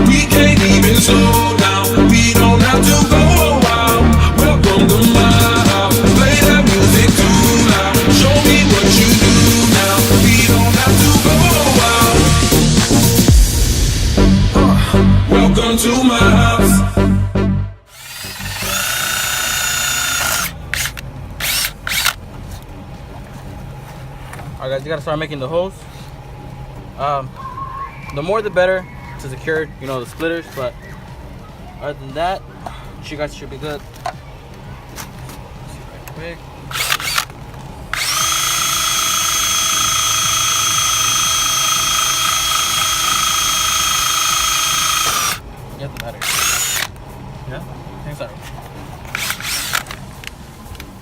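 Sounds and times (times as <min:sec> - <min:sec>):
power drill whining: 0:17.9 - 0:22.2, 0:36.7 - 0:37.3, 0:37.9 - 0:45.4, 0:46.2 - 0:46.9, 0:49.1 - 0:50.0.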